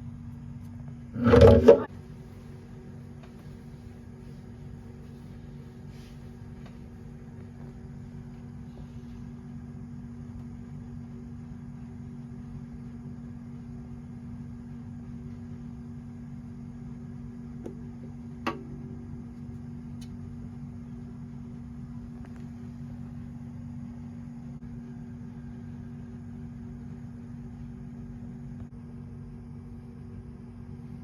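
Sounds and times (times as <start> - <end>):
low background hum: 0.0 - 31.0
ukulele string twang: 1.2 - 1.9.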